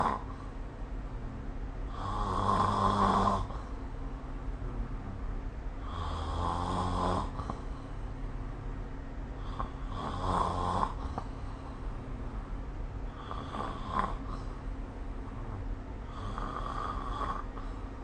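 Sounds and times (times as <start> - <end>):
person snoring: 0.0 - 0.4, 1.1 - 3.7, 5.8 - 7.7, 9.4 - 11.3, 13.1 - 14.6, 15.4 - 17.8
steady low hum: 0.0 - 18.0.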